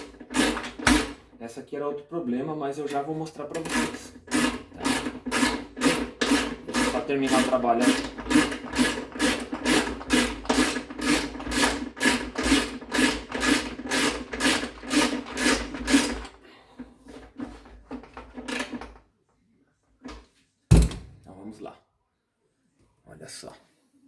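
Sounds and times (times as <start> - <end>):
hand tool rasping strokes: 3.6 - 16.3.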